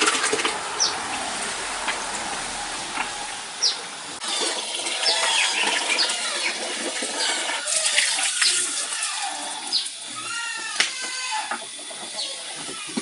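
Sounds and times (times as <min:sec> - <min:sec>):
birds chirping: 0:00.0 - 0:04.2
running water: 0:00.0 - 0:13.0.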